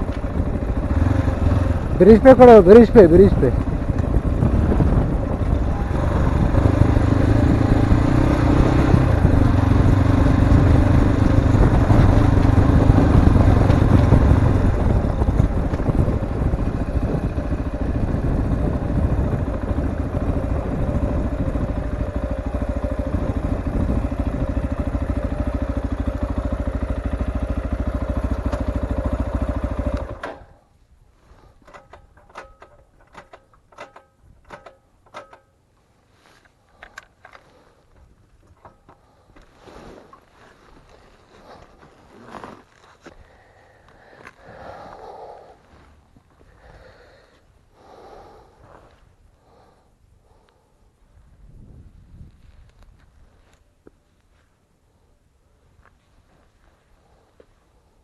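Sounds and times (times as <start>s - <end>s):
motorcycle engine running: 0.0s - 30.7s.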